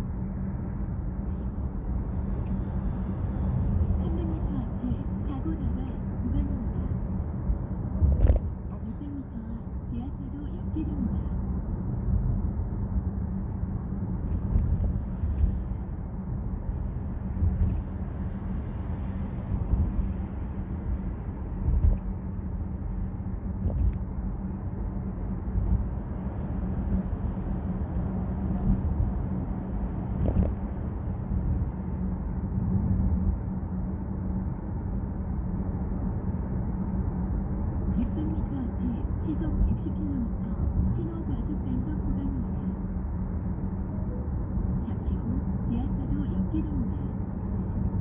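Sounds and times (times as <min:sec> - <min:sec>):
car interior road rumble: 0:00.0 - 0:48.0
constant hum: 0:00.0 - 0:48.0
light thumps: 0:21.6 - 0:22.2.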